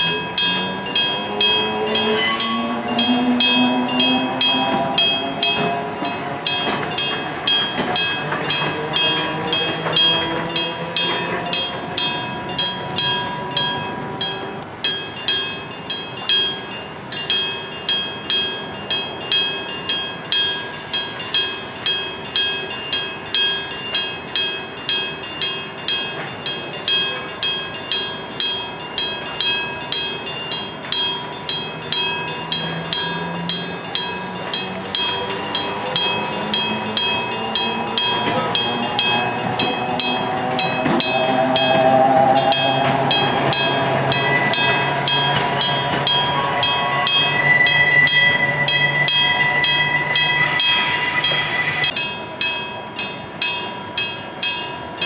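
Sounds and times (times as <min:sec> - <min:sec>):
freight train passing: 0:00.0 - 0:55.0
level crossing bell ringing: 0:00.0 - 0:55.0
high hiss: 0:20.4 - 0:24.2.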